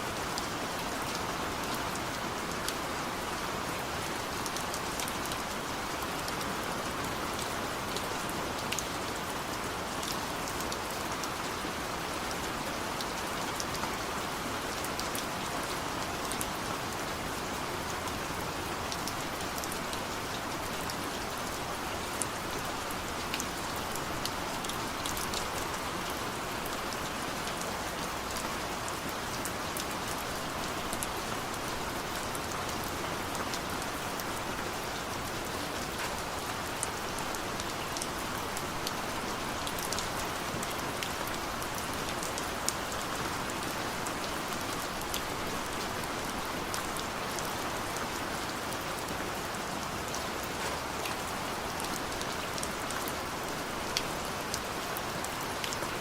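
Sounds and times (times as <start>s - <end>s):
heavy rain: 0.0s - 56.0s.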